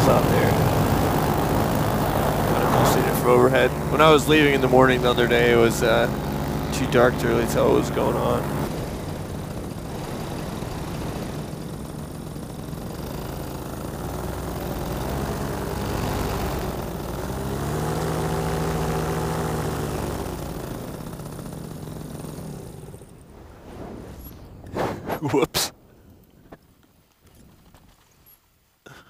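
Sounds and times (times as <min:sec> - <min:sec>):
wind rushing: 0:00.0 - 0:04.0, 0:23.2 - 0:25.4
paramotor engine running: 0:00.0 - 0:23.3.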